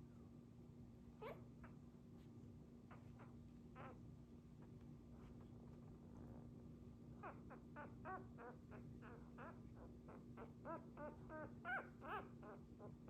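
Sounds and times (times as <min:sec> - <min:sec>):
faint steady hum: 0:00.0 - 0:13.0
puppy whimpering: 0:01.2 - 0:01.8, 0:02.9 - 0:04.0, 0:07.2 - 0:13.0.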